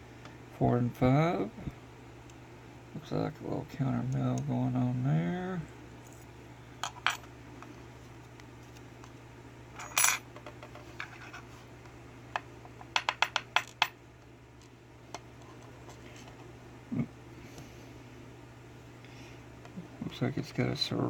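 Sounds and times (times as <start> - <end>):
metal pins clinking on hard surface: 9.8 - 10.3.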